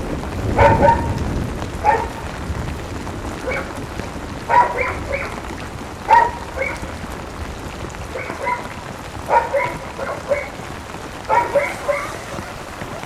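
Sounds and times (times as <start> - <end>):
steady rain: 0.0 - 13.0
dog barking: 0.4 - 2.4, 3.3 - 7.2, 7.9 - 13.0.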